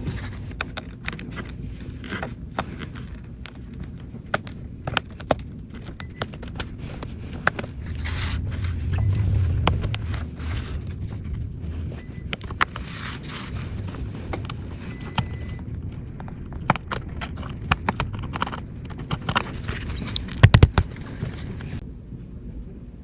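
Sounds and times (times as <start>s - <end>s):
low rumble: 4.7s - 21.8s
hand tools clicking and tapping: 14.4s - 21.0s.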